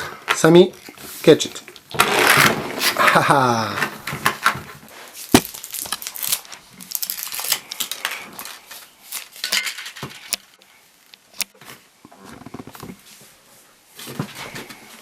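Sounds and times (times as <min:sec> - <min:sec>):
foil wrapper crinkling: 0:05.2 - 0:11.3.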